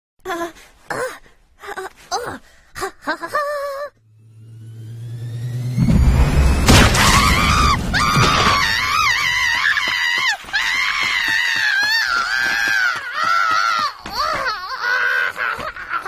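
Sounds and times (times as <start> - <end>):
loud crash: 4.1 - 9.9
cartoon character screaming: 6.9 - 13.9.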